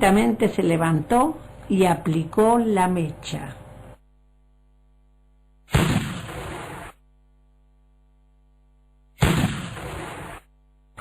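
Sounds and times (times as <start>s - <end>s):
cannon shot boom: 5.7s - 7.0s, 9.2s - 10.5s.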